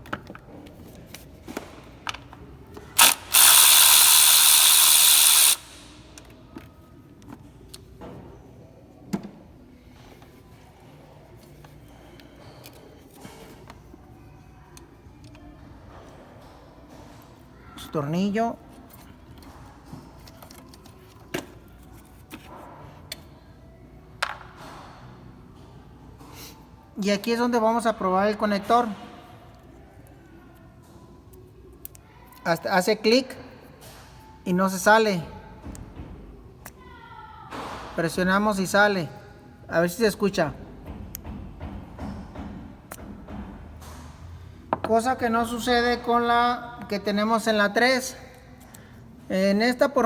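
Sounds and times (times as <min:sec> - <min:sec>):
ratchet wrench clicking: 0:03.0 - 0:06.1.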